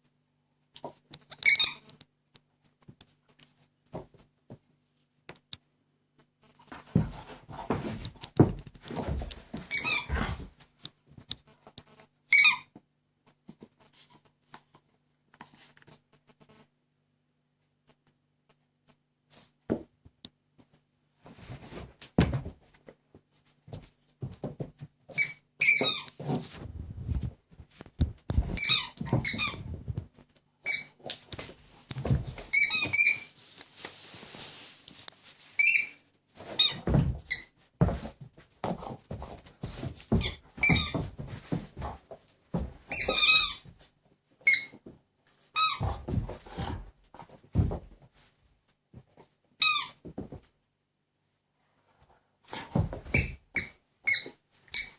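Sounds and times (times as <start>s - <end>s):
squeaky dog toy squeaking: 1.3s - 2.0s, 9.7s - 10.1s, 12.3s - 12.7s, 25.1s - 26.1s, 28.6s - 29.6s, 30.6s - 31.0s, 32.5s - 33.3s, 35.6s - 36.0s, 40.2s - 41.0s, 42.9s - 43.7s, 44.4s - 44.8s, 45.6s - 45.9s, 49.6s - 50.0s, 53.1s - 54.9s.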